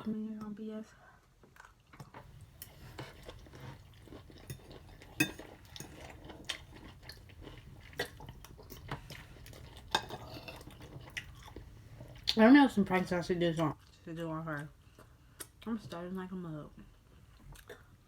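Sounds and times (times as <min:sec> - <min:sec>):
soft chewing: 0:01.4 - 0:16.1, 0:16.8 - 0:18.0.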